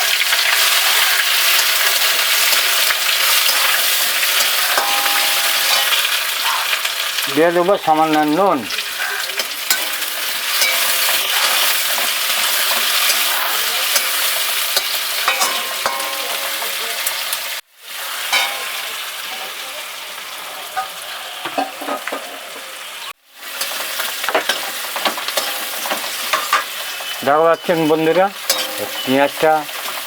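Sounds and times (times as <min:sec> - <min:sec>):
onions sizzling in hot oil: 0:00.0 - 0:30.0
spatula scraping a pan: 0:00.4 - 0:06.8, 0:09.0 - 0:17.3.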